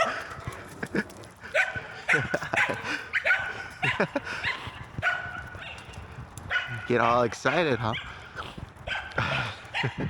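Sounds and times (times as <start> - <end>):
dogs barking and yipping: 0.0 - 10.0.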